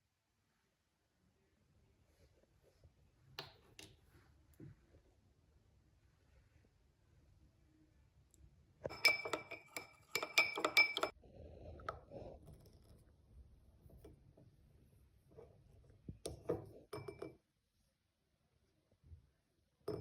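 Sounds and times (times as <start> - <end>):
spoon clinking against glass: 8.9 - 11.2, 16.9 - 17.4.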